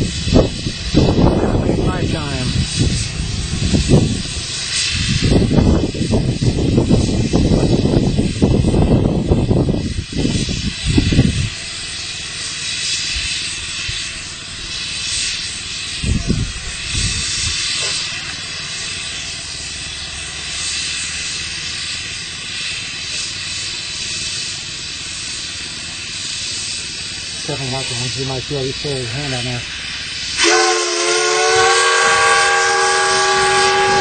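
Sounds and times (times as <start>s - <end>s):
low rumbles: 0.0s - 12.0s, 13.2s - 23.2s
escaping steam hiss: 0.0s - 34.0s.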